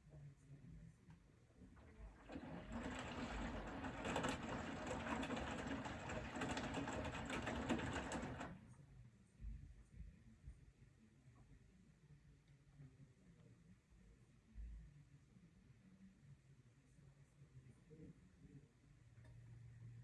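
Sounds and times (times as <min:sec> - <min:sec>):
washing machine running: 0:01.6 - 0:08.6.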